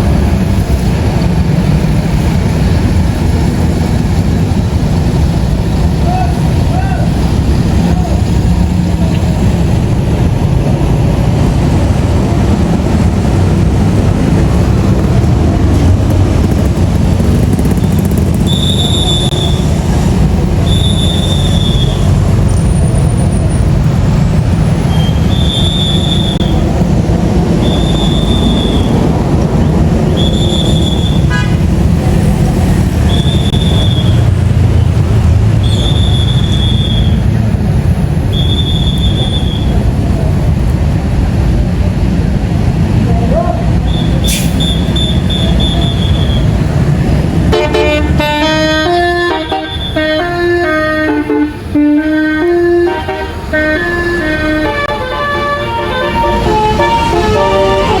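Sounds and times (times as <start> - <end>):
heavy vehicles rumbling: 0.0 - 58.0
high-pitched tone: 52.4 - 58.0.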